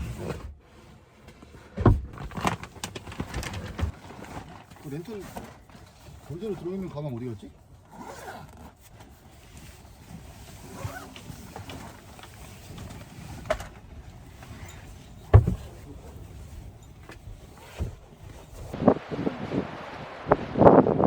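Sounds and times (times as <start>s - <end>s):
camping gear knocks: 14.5s - 16.0s
wind buffeting microphone: 18.0s - 21.0s.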